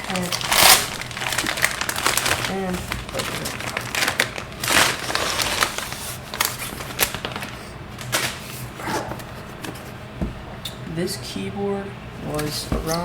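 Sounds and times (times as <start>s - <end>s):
packaging rustle: 0.0s - 10.0s.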